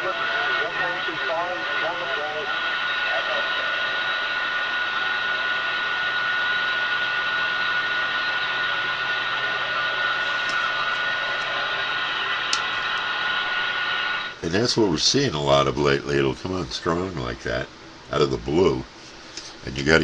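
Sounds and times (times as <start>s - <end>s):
radio static hiss: 0.0s - 20.0s.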